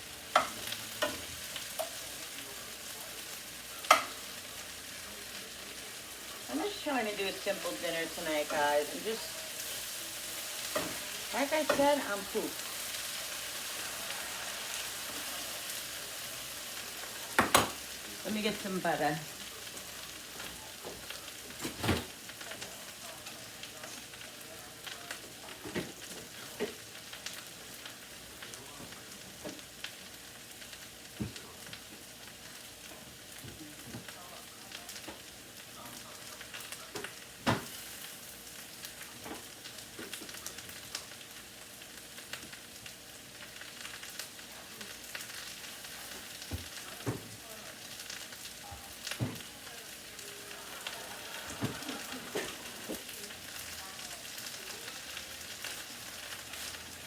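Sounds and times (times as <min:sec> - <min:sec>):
food sizzling in a pan: 0:00.0 - 0:57.0.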